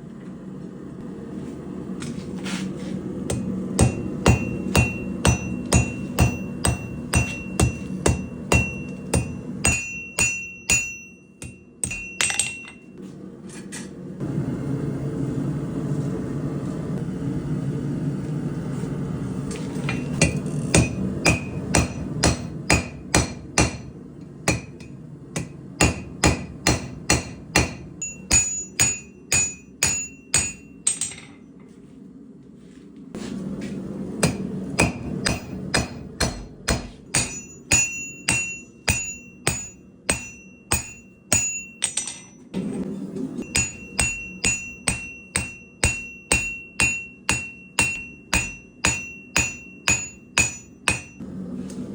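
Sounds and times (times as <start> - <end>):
hammer striking steel on anvil: 3.2 - 13.0, 19.9 - 31.4, 34.1 - 42.6, 43.4 - 51.3.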